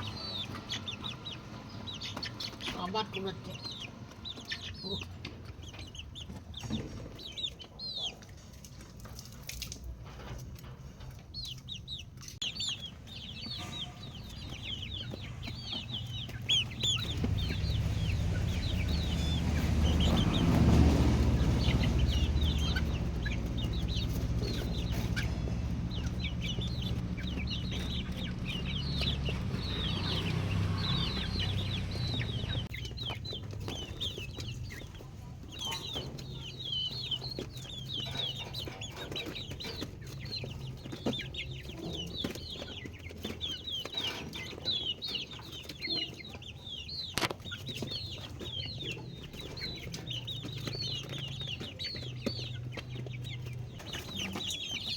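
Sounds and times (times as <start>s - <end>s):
chicks peeping: 0.0s - 54.9s
low rumble: 13.4s - 33.4s.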